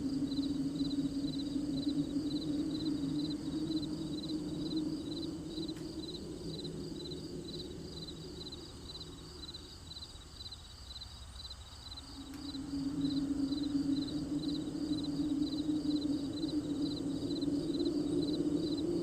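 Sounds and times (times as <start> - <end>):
crickets chirping: 0.0 - 19.0
low steady hum: 0.0 - 19.0.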